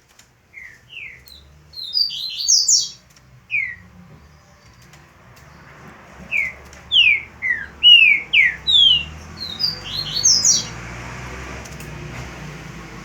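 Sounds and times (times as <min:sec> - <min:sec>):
bird whistling song: 0:00.5 - 0:04.9, 0:06.2 - 0:10.8.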